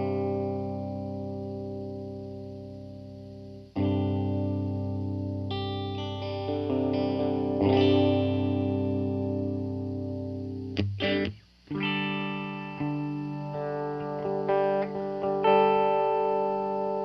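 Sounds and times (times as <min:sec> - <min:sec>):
electric guitar chords and notes: 0:00.0 - 0:17.0.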